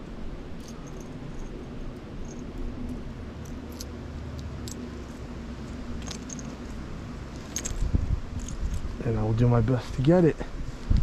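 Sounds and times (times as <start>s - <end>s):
blizzard wind rumble: 0.0s - 11.0s
small metal objects jingling: 0.6s - 1.6s, 2.2s - 2.6s, 3.4s - 3.9s, 4.6s - 8.9s.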